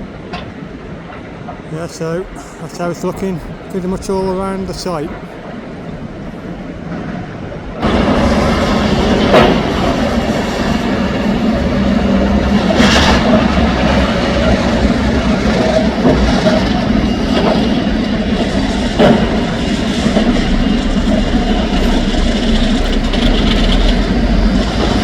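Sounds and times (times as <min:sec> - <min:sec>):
heavy machinery engine hum: 0:07.8 - 0:25.0.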